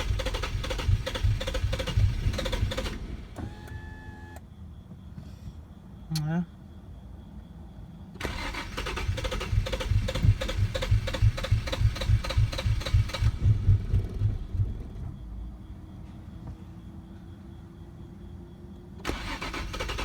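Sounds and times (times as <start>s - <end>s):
starter motor cranking engine: 0.0s - 4.4s, 8.2s - 15.2s, 19.0s - 20.0s.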